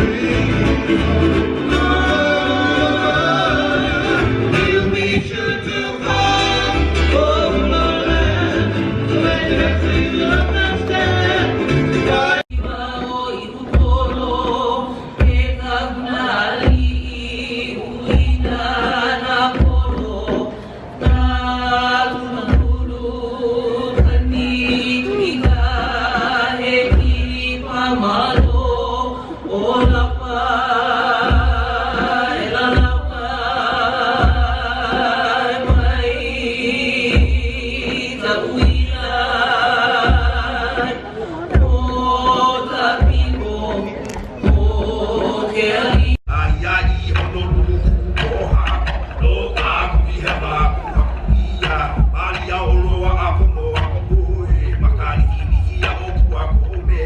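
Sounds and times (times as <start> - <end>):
person singing: 0.0 - 57.0
heavy bass beat: 46.0 - 57.0.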